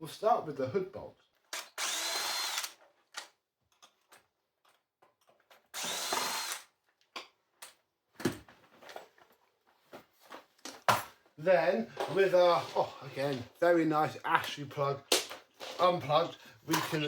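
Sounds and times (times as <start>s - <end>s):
screws and parts clicking: 1.5s - 6.7s
cordless drill whining: 1.6s - 2.8s, 5.7s - 6.7s.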